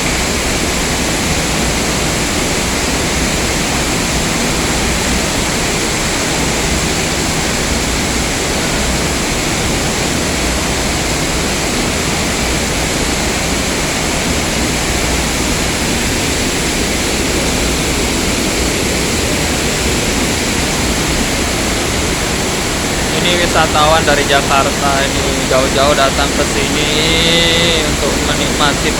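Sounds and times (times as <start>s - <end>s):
waterfall rushing: 0.0s - 28.9s.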